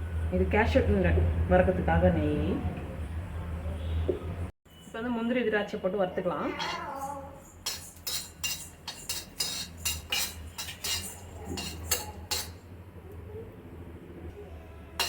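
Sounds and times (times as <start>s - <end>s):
metal spoon clinking on pan: 7.6s - 12.6s.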